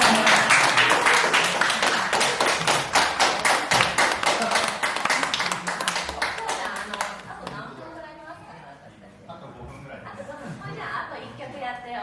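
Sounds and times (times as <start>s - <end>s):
audience clapping: 0.0s - 7.6s.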